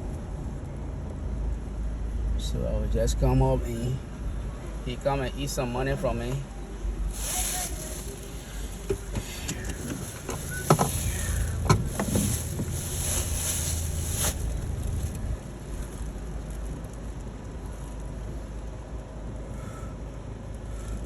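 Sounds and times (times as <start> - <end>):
car engine and road rumble: 0.0 - 19.8
tyre hiss: 7.1 - 15.1.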